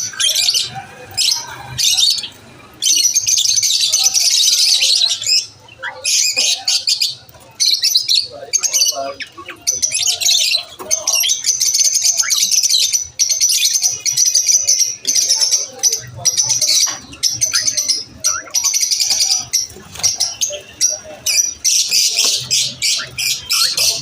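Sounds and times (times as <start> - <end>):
lovebirds chirping: 0.0 - 24.0.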